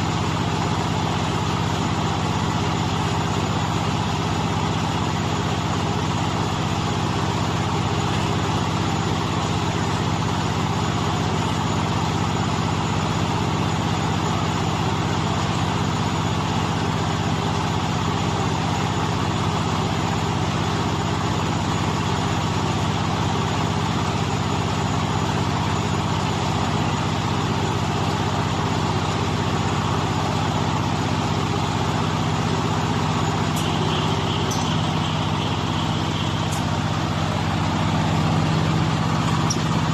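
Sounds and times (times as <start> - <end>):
baler machine humming: 28.2 - 39.9.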